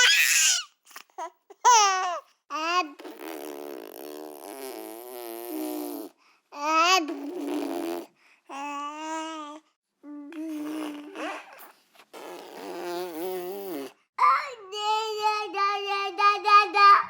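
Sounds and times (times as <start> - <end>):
baby babbling and cooing: 0.0 - 4.5, 6.0 - 11.8, 14.2 - 17.0.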